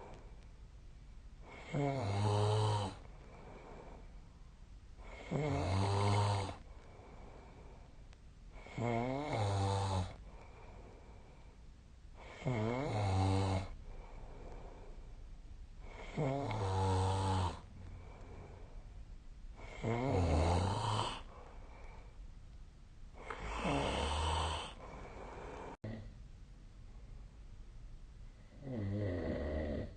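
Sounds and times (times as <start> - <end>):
person snoring: 1.4 - 4.0, 5.0 - 6.7, 8.6 - 10.2, 12.2 - 14.8, 15.8 - 17.7, 19.6 - 21.3, 23.2 - 26.1, 28.5 - 29.9.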